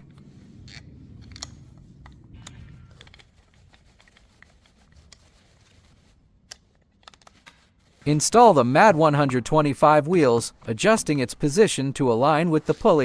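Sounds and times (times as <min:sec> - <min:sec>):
low hum: 0:00.0 - 0:04.4
plastic guard clicking and rattling: 0:00.6 - 0:08.0.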